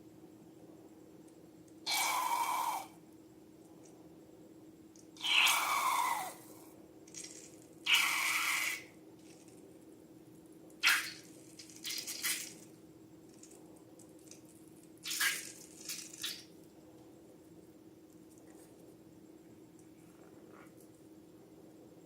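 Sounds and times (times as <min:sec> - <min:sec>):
faint steady hum: 0:00.0 - 0:22.0
slime squishing and dripping: 0:10.8 - 0:12.6.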